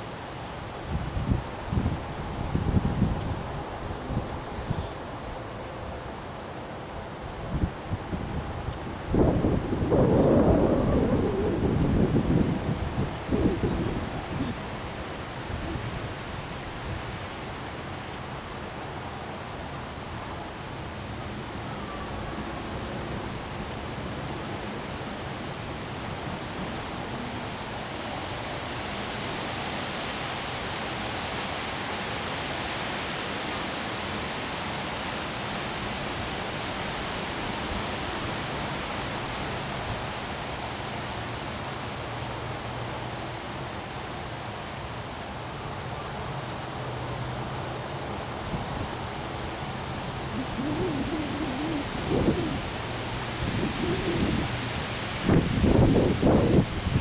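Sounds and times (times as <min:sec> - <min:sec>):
wind: 0:00.0 - 0:57.0
falling rain: 0:07.7 - 0:16.4, 0:49.1 - 0:57.0.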